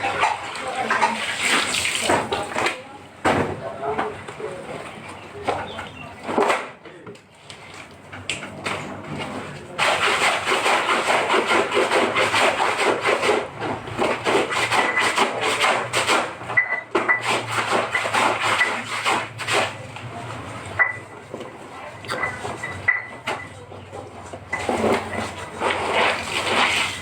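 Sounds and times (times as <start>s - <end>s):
hand-scrubbing laundry: 0.0s - 2.8s, 8.7s - 20.7s, 21.6s - 27.0s.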